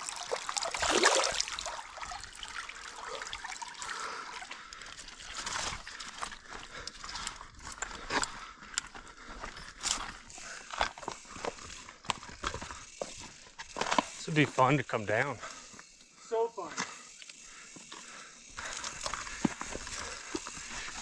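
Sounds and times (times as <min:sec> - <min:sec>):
water trickling: 0:00.0 - 0:06.0.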